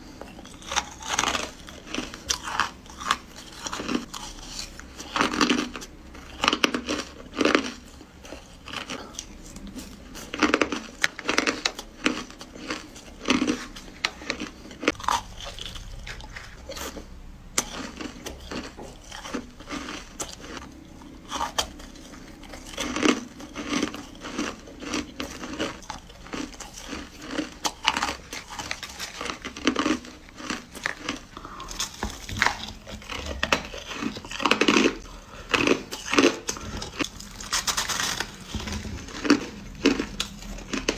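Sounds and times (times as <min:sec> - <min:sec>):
crushed ice crunched between teeth: 0:21.3 - 0:40.9.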